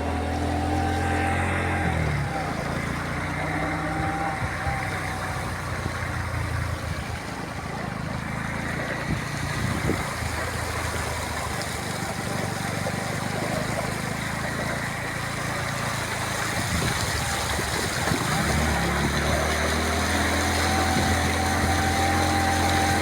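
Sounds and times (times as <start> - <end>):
motor engine running: 0.0 - 23.0
outdoor noise: 0.0 - 23.0.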